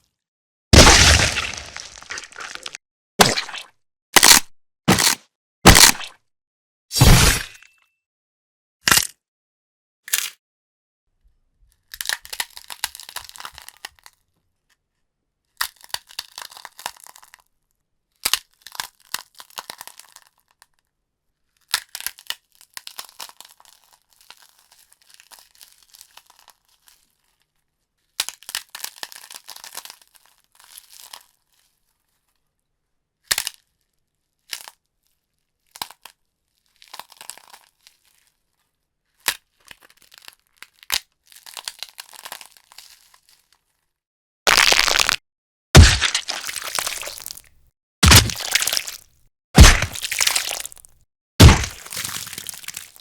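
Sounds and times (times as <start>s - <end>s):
flesh tearing and bone crunching: 0.8s - 6.2s, 7.0s - 7.6s, 11.9s - 14.0s, 44.5s - 45.2s, 45.8s - 49.0s, 49.6s - 53.0s.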